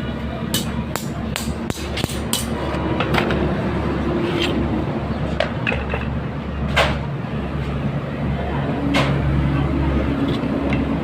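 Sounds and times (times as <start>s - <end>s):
sharp metal knocks: 0.5s - 3.4s.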